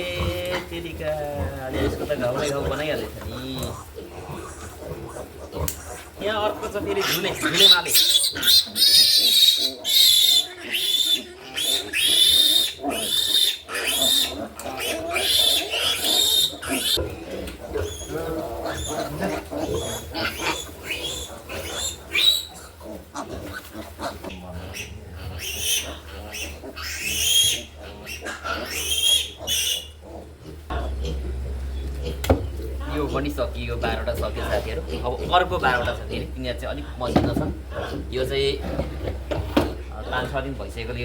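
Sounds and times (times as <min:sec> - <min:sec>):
piglet squealing: 0:01.8 - 0:38.1.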